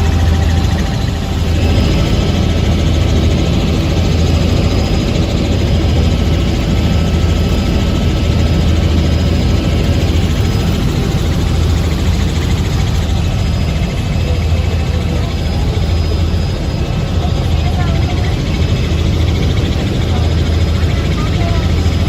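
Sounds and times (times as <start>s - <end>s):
helicopter engine and rotor: 0.0s - 22.0s.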